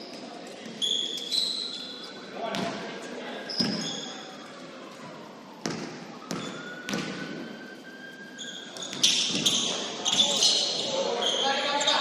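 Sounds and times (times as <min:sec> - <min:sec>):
basketball bouncing on gym floor: 0:02.5 - 0:02.8, 0:05.6 - 0:07.5, 0:08.7 - 0:10.4.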